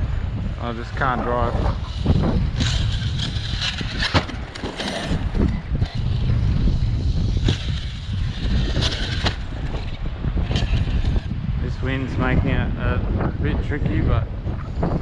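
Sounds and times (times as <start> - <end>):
wind buffeting microphone: 0.0 - 15.0
rc car electric motor whirring: 1.5 - 11.4.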